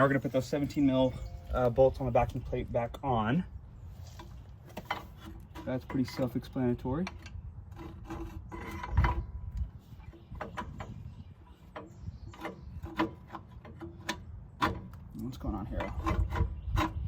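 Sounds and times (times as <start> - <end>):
metal clicks and scraping: 4.1 - 11.1.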